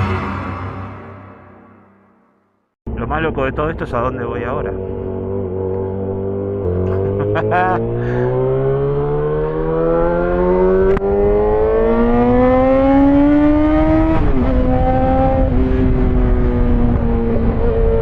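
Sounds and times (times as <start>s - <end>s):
motorcycle engine revving: 4.6s - 18.0s.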